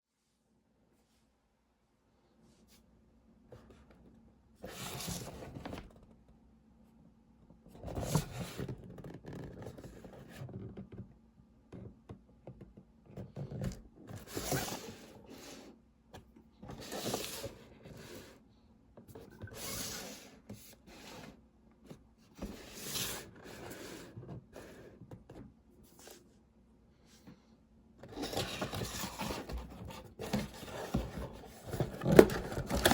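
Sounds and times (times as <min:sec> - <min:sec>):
packaging scraping and rustling: 0:13.6 - 0:15.6, 0:16.7 - 0:18.4, 0:28.0 - 0:32.9.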